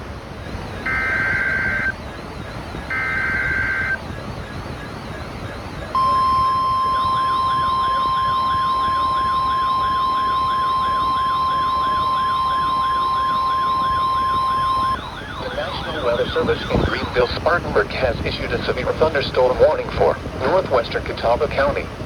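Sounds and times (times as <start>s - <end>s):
steady high-pitched alarm tone: 0.6s - 17.7s
fast warbling tone: 6.0s - 18.3s.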